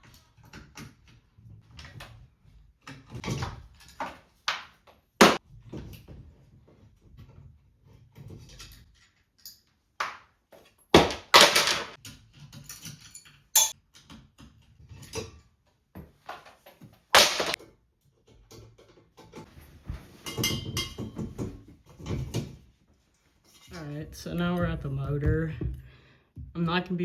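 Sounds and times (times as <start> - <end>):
ceiling fan parts rattling: 11.3 - 25.7.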